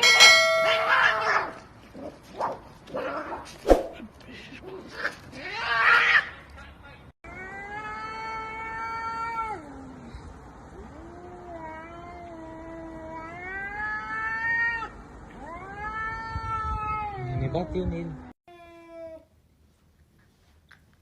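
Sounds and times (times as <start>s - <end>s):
cat yowling: 0.6s - 1.6s, 5.4s - 6.3s, 7.3s - 10.1s, 10.7s - 19.3s.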